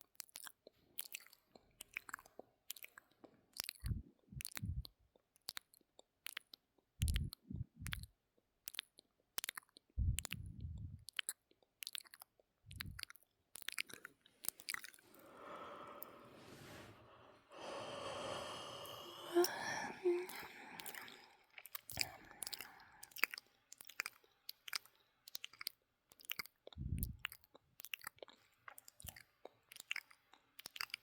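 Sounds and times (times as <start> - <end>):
wet mouth clicks and smacks: 0.0 - 15.0, 19.4 - 31.0
long drawn-out breath: 15.0 - 23.0.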